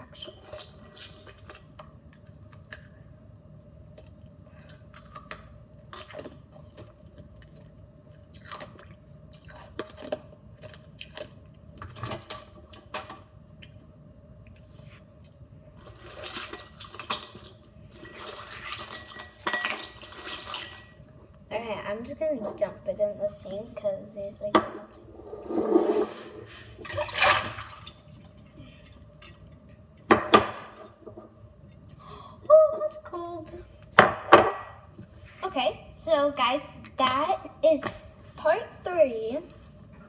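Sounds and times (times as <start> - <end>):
water sloshing and ice crunching: 15.8 - 21.0, 26.7 - 28.6.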